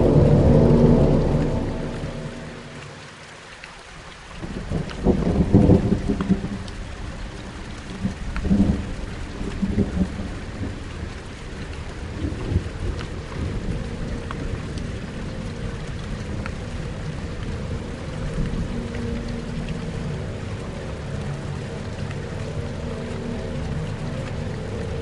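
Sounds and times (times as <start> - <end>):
thunder rumbling: 0.0 - 3.1, 4.4 - 6.8
faint low drone: 0.0 - 3.3, 12.5 - 25.0
steady rain: 0.0 - 25.0.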